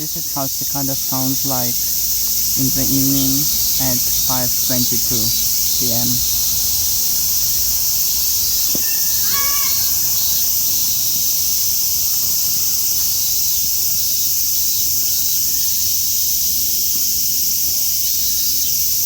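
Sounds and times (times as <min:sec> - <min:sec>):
cicadas calling: 0:00.0 - 0:19.0.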